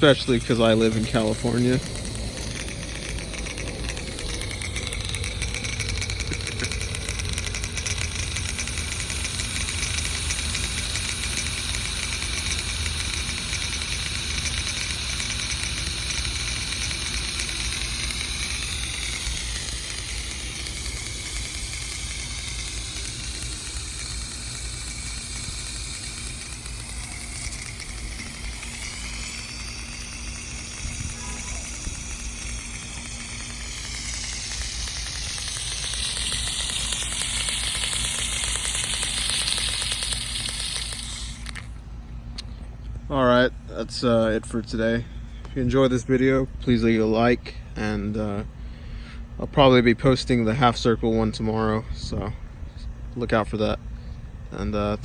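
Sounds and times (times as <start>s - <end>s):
rotary sprinkler hissing: 0.0s - 41.9s.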